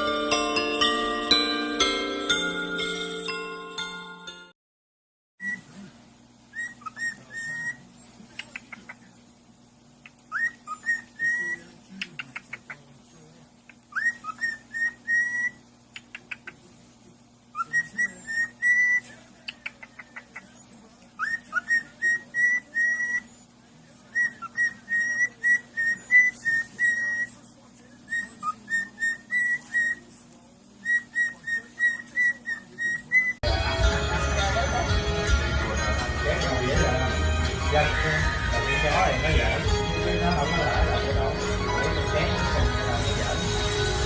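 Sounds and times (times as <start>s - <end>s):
parrot whistling: 5.4s - 5.7s, 6.5s - 8.0s, 10.1s - 11.7s, 13.9s - 15.6s, 17.5s - 19.1s, 21.2s - 23.5s, 24.1s - 27.4s, 28.0s - 30.1s, 30.8s - 33.4s
parrot chirping rapidly: 6.4s - 9.2s, 10.0s - 12.9s, 13.7s - 16.6s, 17.5s - 27.4s, 28.0s - 30.1s, 30.8s - 33.4s, 35.5s - 44.0s.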